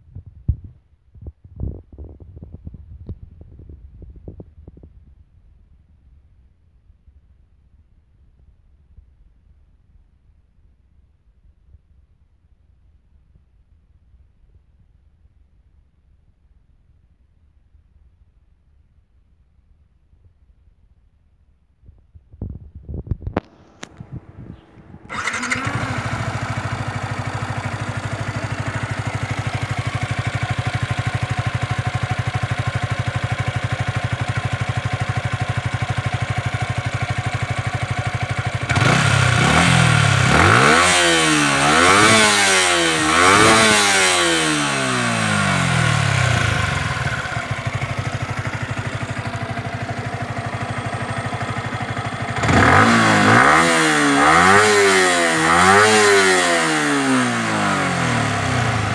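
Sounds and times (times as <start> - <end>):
motorcycle engine idling and revving: 23.3 - 58.9.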